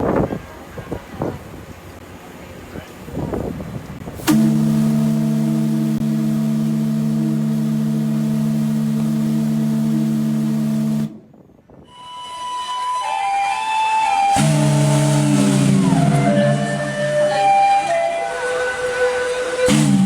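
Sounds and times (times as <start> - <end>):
steam whistle blast: 4.3 - 20.0.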